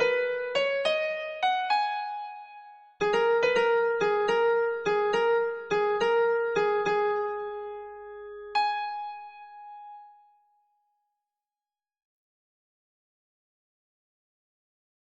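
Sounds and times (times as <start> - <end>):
synthesized electric piano melody: 0.0 - 10.4.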